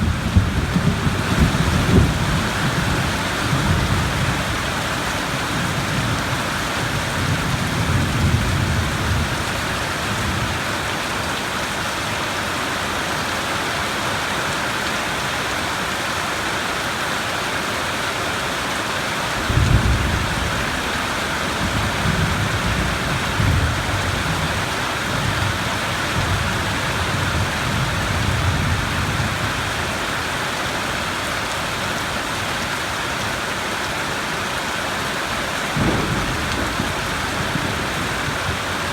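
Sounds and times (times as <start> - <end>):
rolling thunder: 0.0 - 4.8, 19.4 - 29.4, 35.7 - 38.9
steady rain: 0.0 - 38.9.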